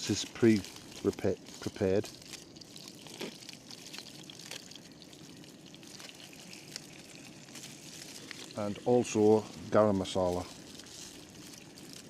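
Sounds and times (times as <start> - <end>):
sauce sizzling in a pan: 0.0 - 12.0.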